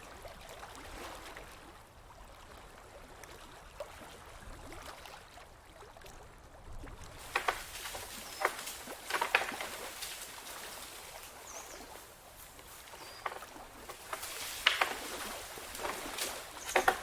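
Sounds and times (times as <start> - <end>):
flowing water rushing: 0.0 - 17.0
water splashing and gurgling: 0.0 - 17.0
faint bird chirps: 11.4 - 12.0, 12.8 - 13.4.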